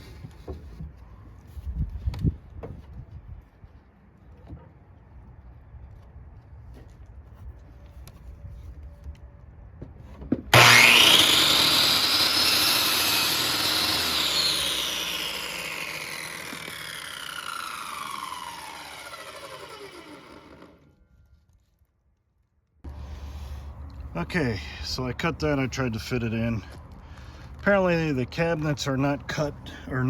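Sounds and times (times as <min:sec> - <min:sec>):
electric power saw whine: 0:10.5 - 0:21.0.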